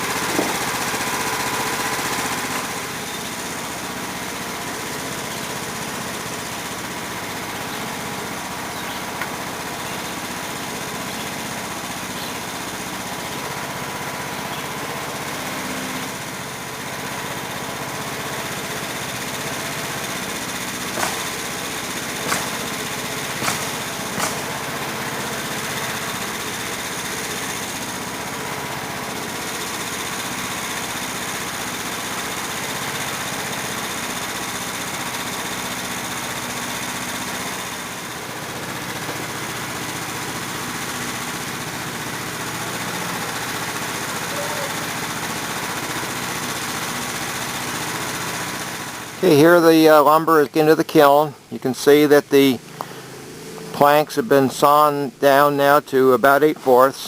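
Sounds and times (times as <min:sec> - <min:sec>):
small gasoline engine running: 0:00.0 - 0:57.0
sharp clicks: 0:21.0 - 0:21.4, 0:22.2 - 0:22.7, 0:23.4 - 0:24.5.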